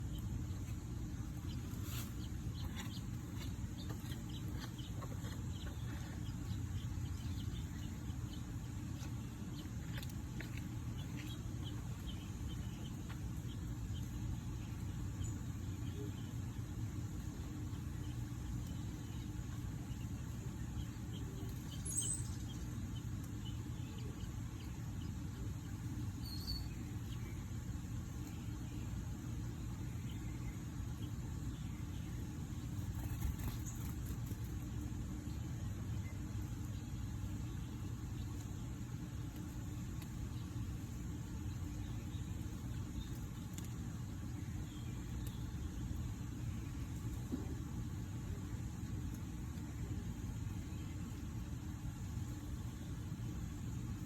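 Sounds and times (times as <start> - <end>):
low outdoor rumble: 0.0 - 54.0
faint bird chirps: 11.0 - 27.7.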